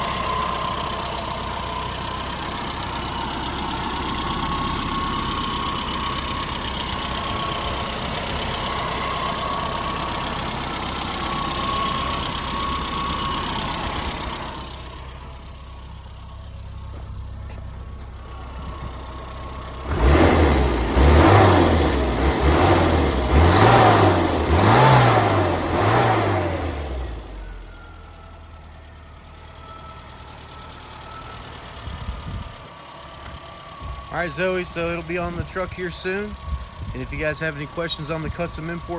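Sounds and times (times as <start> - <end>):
car engine idling: 0.0 - 38.9
engine revving surges: 19.8 - 27.5.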